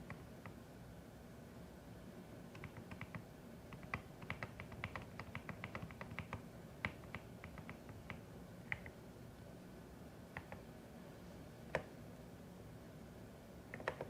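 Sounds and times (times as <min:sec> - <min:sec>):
mechanical keyboard keystroke clicks: 0:02.5 - 0:08.9, 0:13.7 - 0:14.0.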